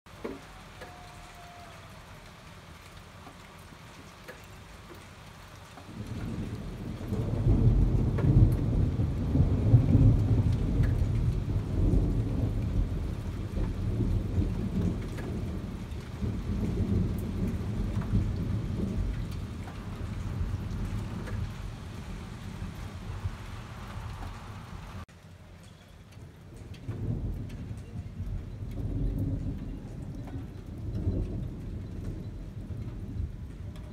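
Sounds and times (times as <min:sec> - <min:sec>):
rain falling: 0:00.1 - 0:33.9
thunder rumbling: 0:05.9 - 0:25.1, 0:26.8 - 0:33.9.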